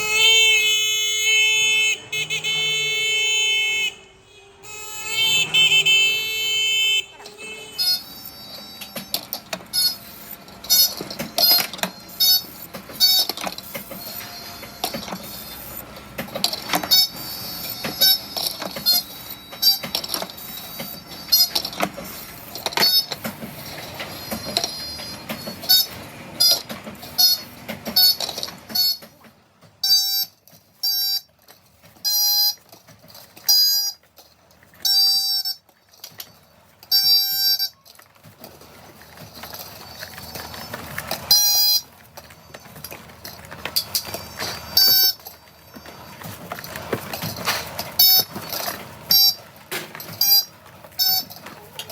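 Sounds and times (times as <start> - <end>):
bike air horn toots: 0.0 - 8.5
workshop noise: 0.0 - 51.9.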